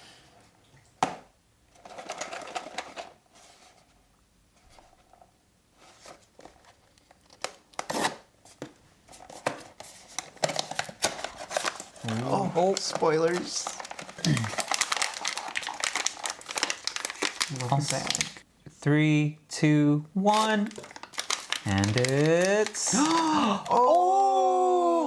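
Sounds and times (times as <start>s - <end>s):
cardboard rustling and tearing: 5.9s - 8.3s, 9.1s - 18.4s, 20.3s - 23.8s
packaging clicks and crinkles: 6.3s - 8.1s, 9.3s - 18.4s, 20.3s - 23.9s.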